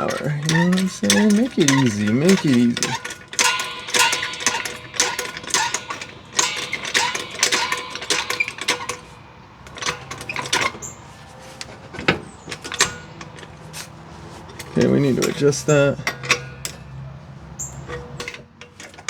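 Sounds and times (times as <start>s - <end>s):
metallic tool clinks on steel: 0.0s - 10.9s.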